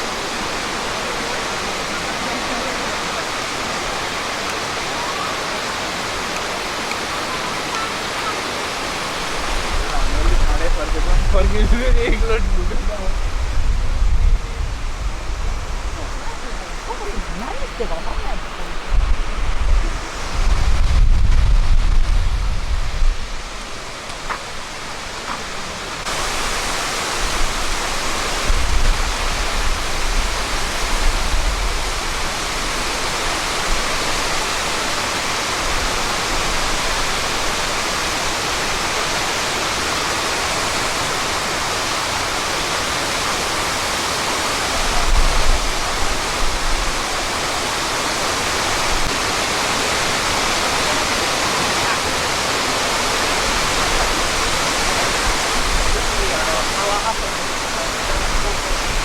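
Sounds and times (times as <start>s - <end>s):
waterfall roaring: 0.0s - 59.0s
low rumbles on the microphone: 9.6s - 23.5s.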